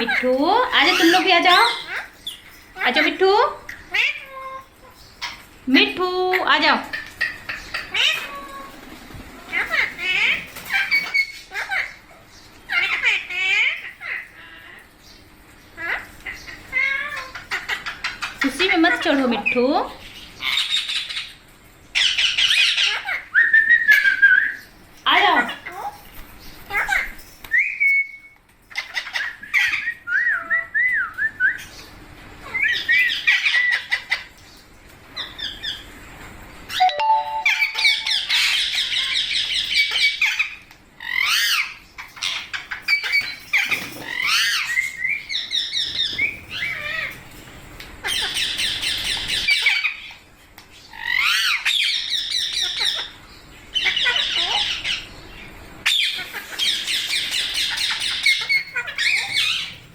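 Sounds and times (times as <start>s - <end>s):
parakeets squawking: 0.0s - 14.8s, 15.8s - 24.4s, 36.7s - 47.2s, 48.0s - 59.9s.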